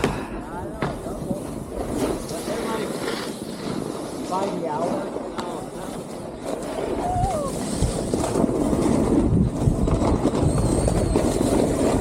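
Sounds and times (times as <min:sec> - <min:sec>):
snowboard scraping over snow: 0:00.4 - 0:12.0
wind rushing over microphone: 0:05.0 - 0:12.0.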